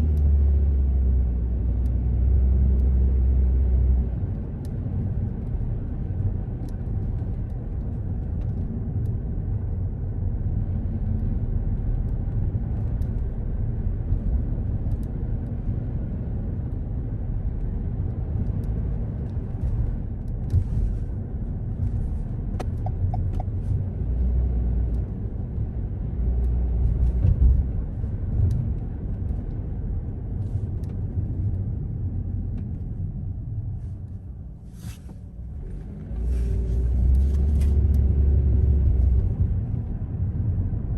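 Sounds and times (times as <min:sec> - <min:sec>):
car engine and road noise: 0:00.0 - 0:40.9.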